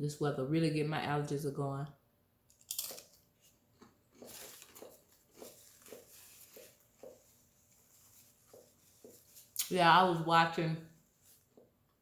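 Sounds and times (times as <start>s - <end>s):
person chewing food: 2.6s - 9.6s.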